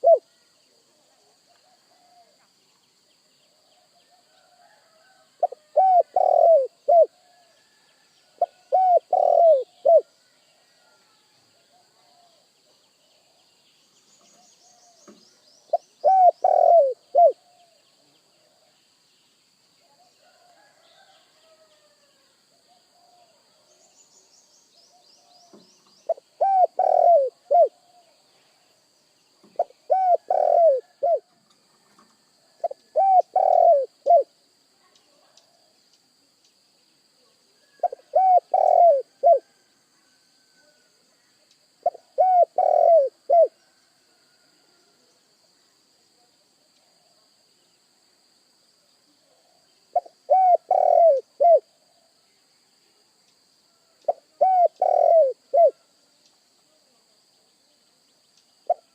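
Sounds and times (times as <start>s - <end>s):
dove cooing: 0.0s - 0.3s, 5.4s - 7.6s, 8.4s - 10.8s, 15.7s - 17.8s, 26.1s - 28.2s, 29.6s - 31.3s, 32.5s - 34.3s, 37.6s - 39.6s, 41.8s - 43.6s, 50.0s - 51.7s, 54.1s - 55.8s
small birds twittering: 5.4s - 10.8s, 11.6s - 19.8s, 22.8s - 32.0s, 32.6s - 36.6s, 37.3s - 39.6s, 41.2s - 43.8s, 49.5s - 52.6s, 54.0s - 56.5s.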